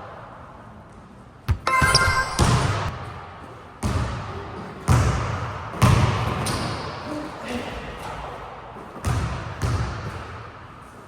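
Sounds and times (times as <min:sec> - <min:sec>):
basketball bouncing on court: 0:01.5 - 0:03.2, 0:03.8 - 0:07.0, 0:09.0 - 0:10.5.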